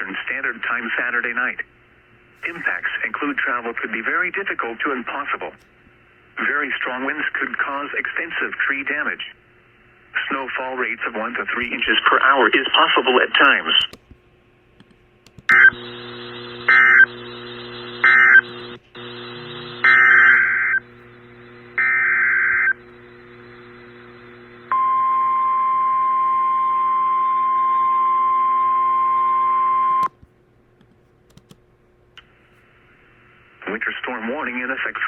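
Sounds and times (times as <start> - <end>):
low steady hum: 0.0 - 35.0
steady warning tone: 15.5 - 30.1.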